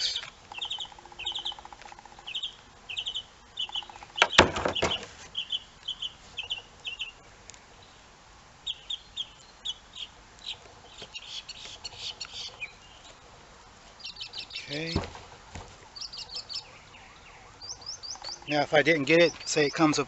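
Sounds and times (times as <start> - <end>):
small bird chirping: 0.0 - 8.0, 8.6 - 13.2, 14.0 - 15.0, 15.8 - 20.0.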